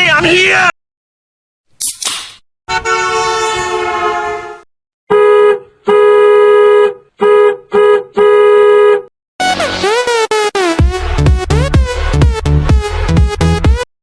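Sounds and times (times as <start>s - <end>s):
vehicle horn honking: 2.7s - 9.1s.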